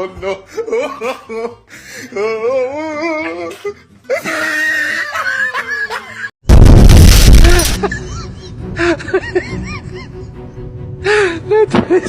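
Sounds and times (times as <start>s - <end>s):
loud harsh noise burst: 6.5s - 7.8s.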